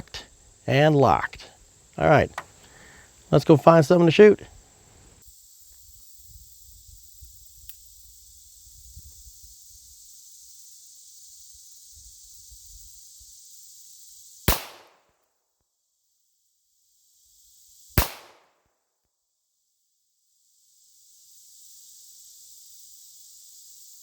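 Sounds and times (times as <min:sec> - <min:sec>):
small knocks: 0:02.3 - 0:02.5
pistol shot with echo: 0:14.5 - 0:15.0, 0:18.0 - 0:18.5.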